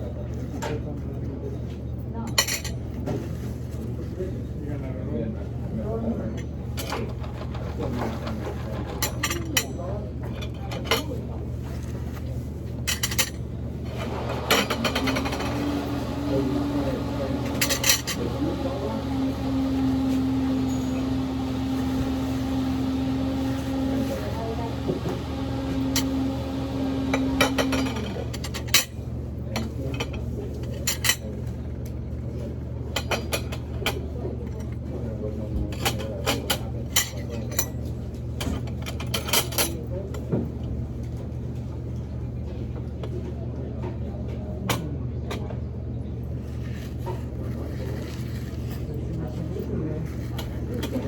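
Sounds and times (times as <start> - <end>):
cutlery and dishes clinking: 12.9 - 15.9
background voices: 14.0 - 28.1.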